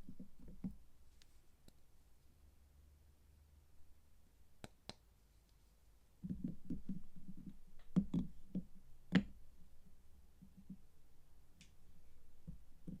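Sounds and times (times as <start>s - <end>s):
soap bars knocking and tapping: 0.0s - 0.8s, 6.2s - 9.5s.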